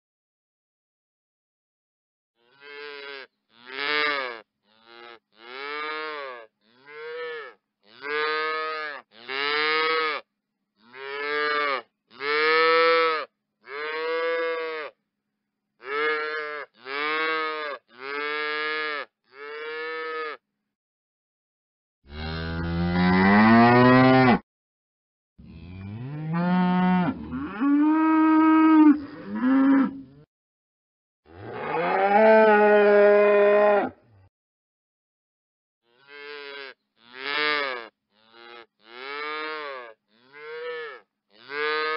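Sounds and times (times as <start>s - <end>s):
cattle mooing: 22.1s - 24.4s, 25.4s - 30.1s, 31.3s - 34.0s, 35.9s - 41.9s.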